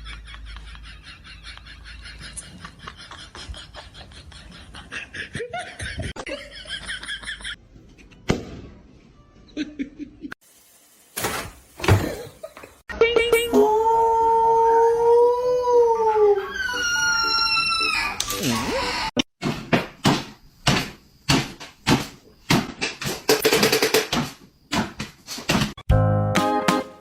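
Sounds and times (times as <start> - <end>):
animal howling: 13.5 - 19.1.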